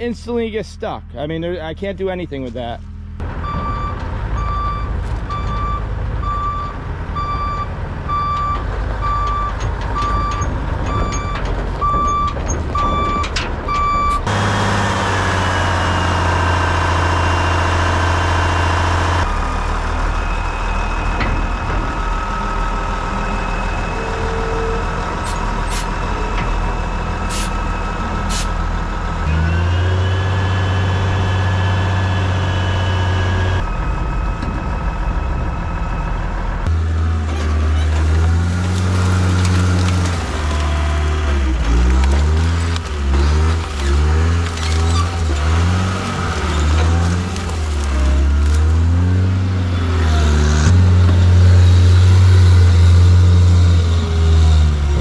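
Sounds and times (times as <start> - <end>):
truck engine revving: 3.0 - 55.0
truck reversing alarm beeping: 3.4 - 36.8.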